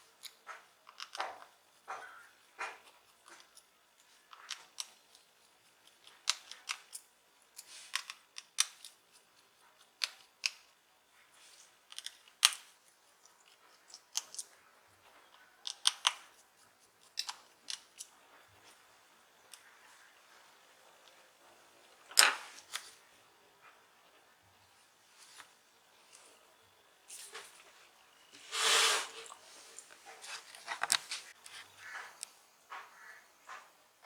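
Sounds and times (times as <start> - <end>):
small tools and plastic parts clicking: 0.2 - 10.8, 11.6 - 14.6, 15.3 - 18.8.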